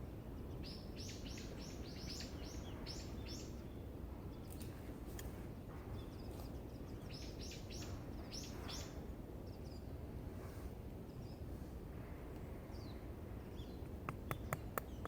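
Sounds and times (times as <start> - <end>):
low background rumble: 0.0 - 15.0
small bird chirping: 0.4 - 5.3, 5.9 - 9.9.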